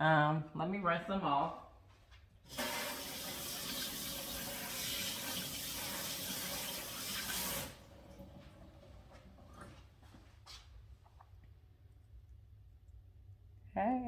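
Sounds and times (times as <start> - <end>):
water running from a faucet: 2.5 - 9.0.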